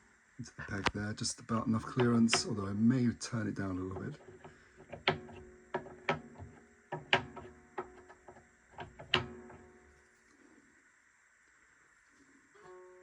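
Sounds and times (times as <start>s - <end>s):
wooden clicks and knocks: 1.6s - 2.7s, 3.8s - 10.0s.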